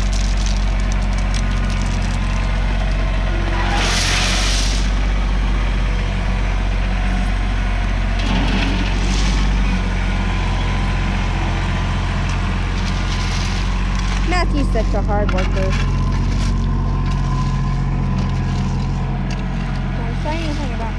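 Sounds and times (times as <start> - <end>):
tractor engine running: 0.0 - 20.9.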